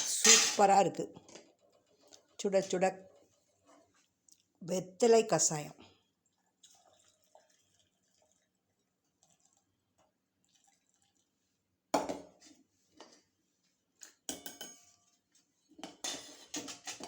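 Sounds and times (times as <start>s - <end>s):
kitchen utensils clinking: 0.0s - 0.9s.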